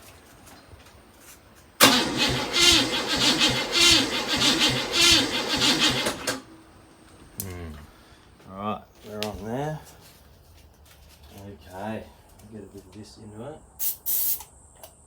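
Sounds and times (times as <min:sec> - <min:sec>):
engine cranking by starter motor: 0:01.8 - 0:07.5.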